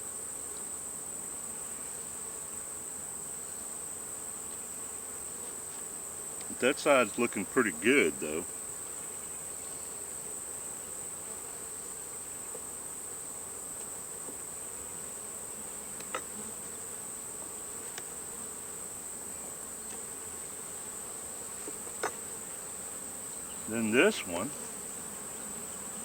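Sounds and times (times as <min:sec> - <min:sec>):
bees buzzing: 0:06.4 - 0:08.6, 0:14.9 - 0:26.0.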